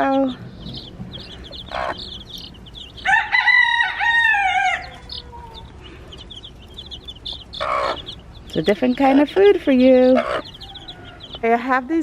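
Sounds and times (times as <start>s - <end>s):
chicks peeping: 0.0s - 12.0s
rooster crowing: 3.0s - 5.8s, 10.2s - 11.4s.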